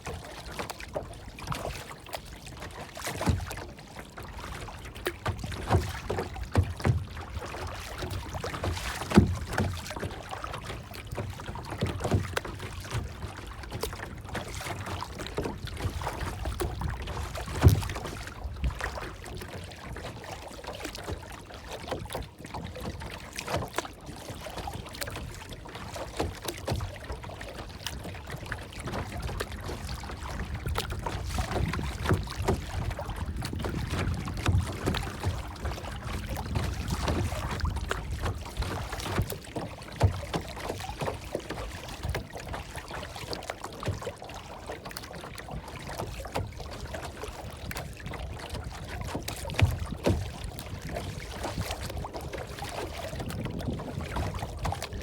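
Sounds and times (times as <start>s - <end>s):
water lapping and splashing: 0.0s - 55.0s.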